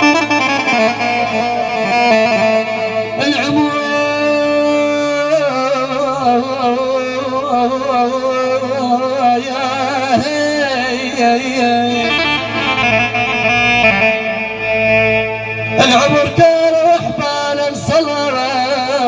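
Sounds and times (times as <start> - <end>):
ornamented vocal song with accompaniment: 0.0 - 19.0.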